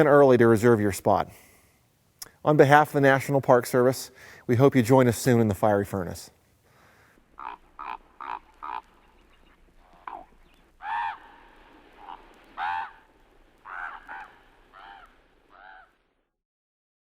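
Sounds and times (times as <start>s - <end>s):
bird calling: 6.8s - 16.0s.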